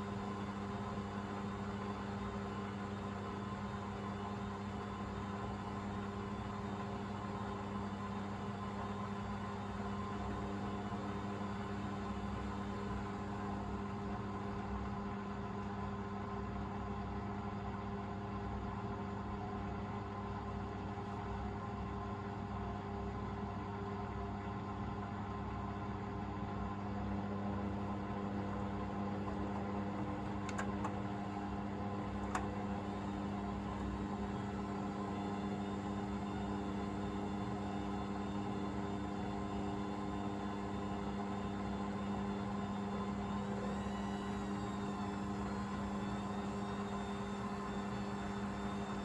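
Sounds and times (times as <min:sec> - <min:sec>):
washing machine motor hum: 0:25.7 - 0:49.0.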